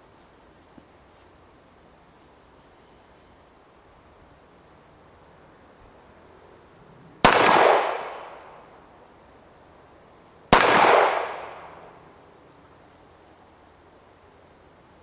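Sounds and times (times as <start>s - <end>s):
pistol shots: 7.2s - 8.4s, 10.5s - 11.8s.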